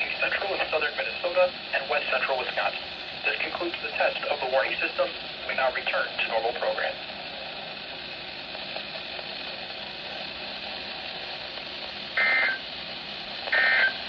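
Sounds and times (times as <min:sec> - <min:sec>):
radio static hiss: 0:00.0 - 0:14.0
warbling digital data tones: 0:12.2 - 0:12.6, 0:13.5 - 0:14.0.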